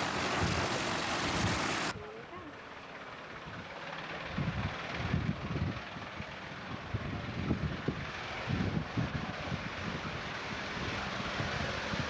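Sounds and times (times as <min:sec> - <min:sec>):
wind buffeting microphone: 0:00.0 - 0:02.0.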